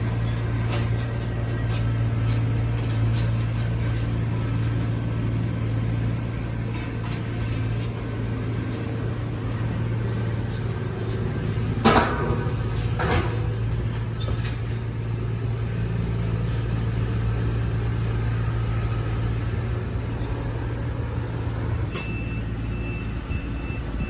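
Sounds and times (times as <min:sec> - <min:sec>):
combine harvester engine drone: 0:00.0 - 0:24.0.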